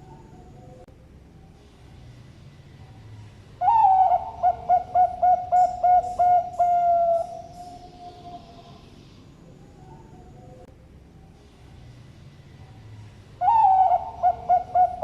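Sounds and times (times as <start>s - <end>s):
dove cooing: 3.6s - 8.8s, 13.4s - 15.0s.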